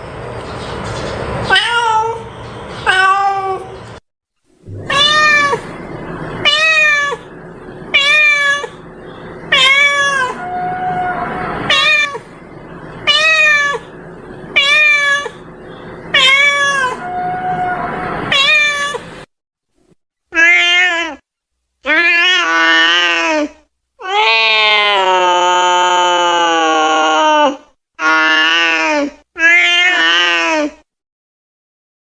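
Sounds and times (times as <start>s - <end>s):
cat meowing: 1.5s - 3.7s, 4.7s - 5.8s, 6.4s - 7.3s, 7.9s - 8.8s, 9.5s - 12.3s, 13.0s - 13.9s, 14.5s - 15.5s, 16.1s - 19.1s, 20.4s - 21.2s, 24.0s - 30.7s.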